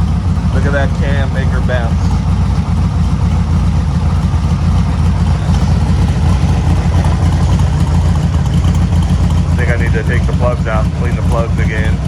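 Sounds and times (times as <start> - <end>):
car engine idling roughly: 0.0 - 12.0.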